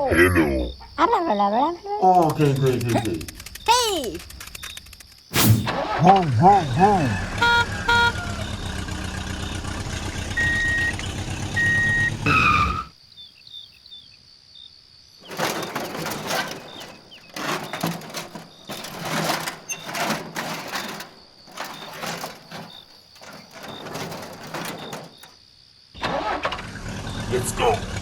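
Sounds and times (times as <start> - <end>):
vehicle engine running: 5.6 - 12.8, 26.6 - 28.0
short horn beeps: 6.5 - 8.8.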